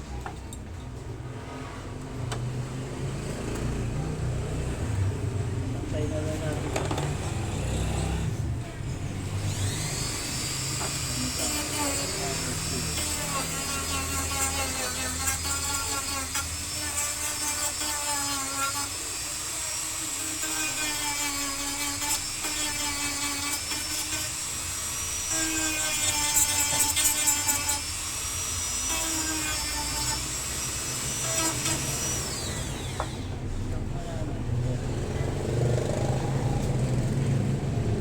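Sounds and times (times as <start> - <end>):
rotary tool grinding whine: 9.2 - 33.5.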